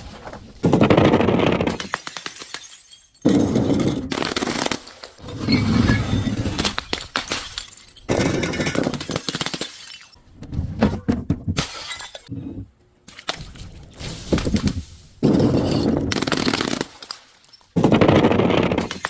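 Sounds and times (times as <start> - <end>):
glass bottles shattering: 1.7 - 10.2, 11.6 - 12.3, 13.2 - 17.9.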